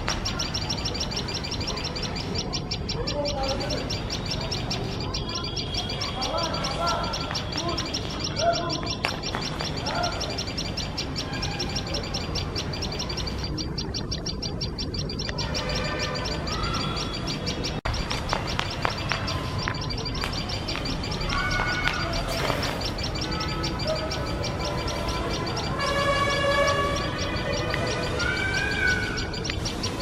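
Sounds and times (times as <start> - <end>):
birds giving alarm calls: 0.0 - 30.0.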